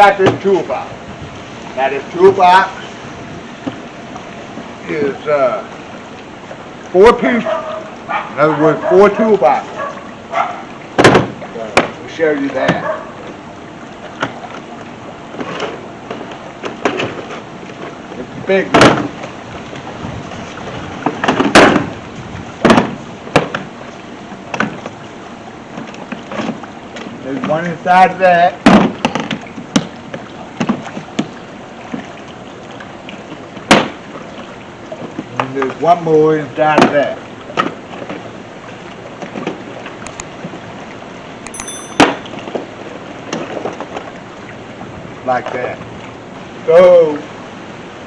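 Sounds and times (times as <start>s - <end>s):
toolboxes knocking and clattering: 41.6s - 42.3s.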